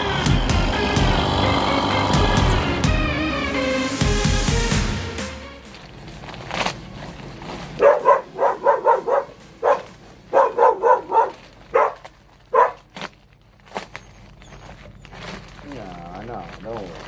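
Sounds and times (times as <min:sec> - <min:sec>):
dog barking: 0:07.7 - 0:12.9.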